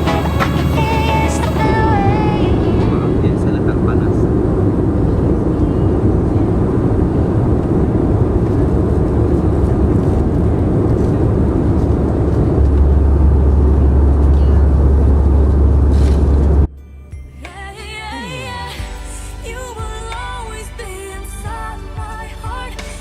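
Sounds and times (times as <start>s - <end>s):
engine and airflow rush: 0.0s - 16.7s
deep hum: 0.0s - 23.0s.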